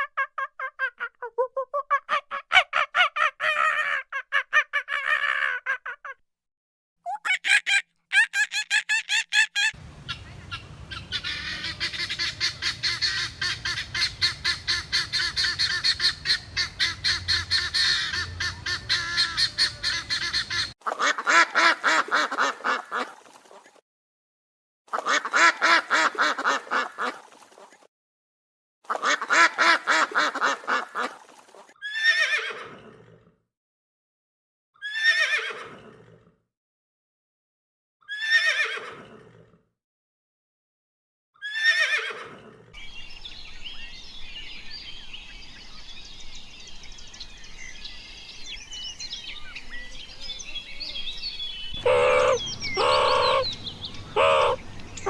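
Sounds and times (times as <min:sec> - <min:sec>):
poultry rapid pulsed calls: 0:07.2 - 0:20.7, 0:51.7 - 0:55.0.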